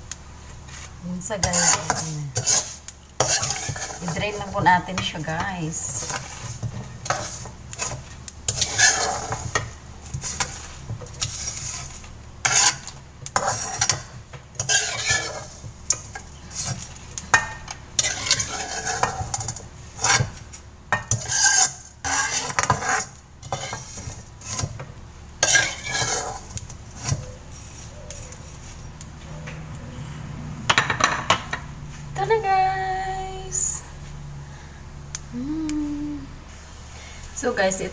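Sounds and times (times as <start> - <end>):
oil sizzling: 0.0 - 29.1
metal utensil scraping a pan: 0.7 - 24.8, 25.4 - 28.9.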